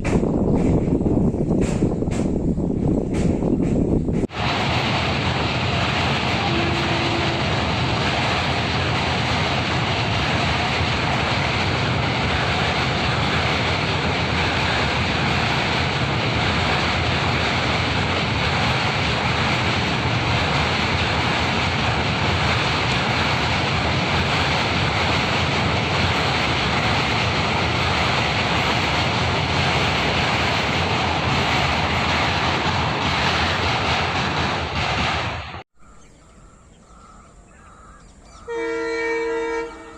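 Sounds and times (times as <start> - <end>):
wind noise: 0.0 - 37.9
train rumbling over bridge: 0.0 - 39.9.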